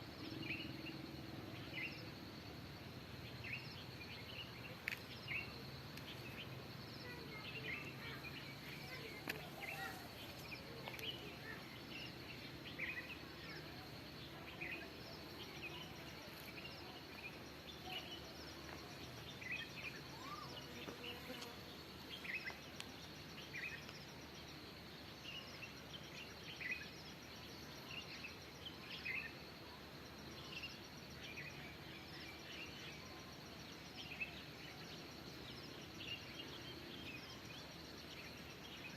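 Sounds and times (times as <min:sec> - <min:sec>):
faint outdoor hiss: 0:00.0 - 0:38.9
birds chirping: 0:03.3 - 0:21.2.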